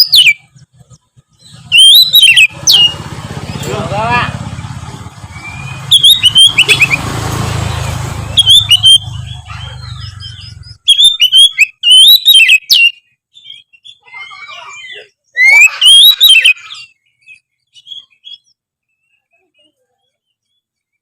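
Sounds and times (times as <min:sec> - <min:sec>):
bird singing whistles and chirps: 0:00.0 - 0:00.6, 0:01.3 - 0:03.7, 0:05.2 - 0:07.0, 0:08.3 - 0:19.2.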